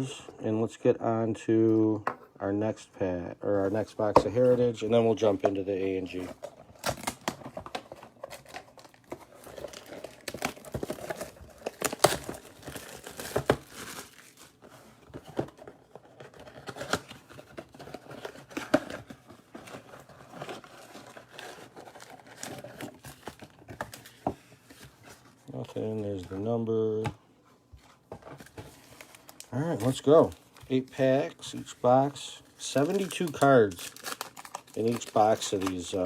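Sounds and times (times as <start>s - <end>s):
plastic wrapping crinkling and tearing: 5.8s - 24.9s, 28.4s - 36.0s.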